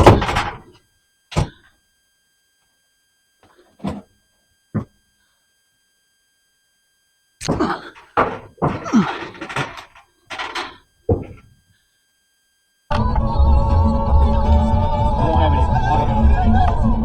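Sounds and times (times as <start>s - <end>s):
heavy thunks and knocks: 7.5s - 11.5s.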